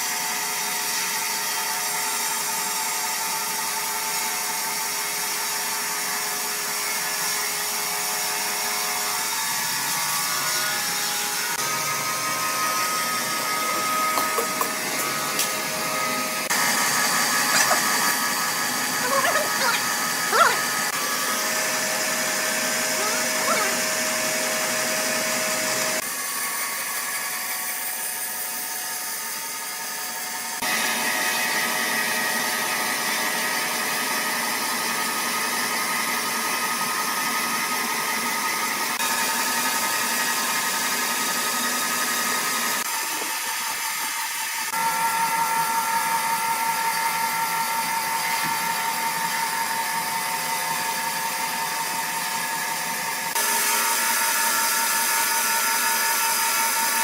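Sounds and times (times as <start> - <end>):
sawmill machinery whining hiss: 36.6 - 57.0.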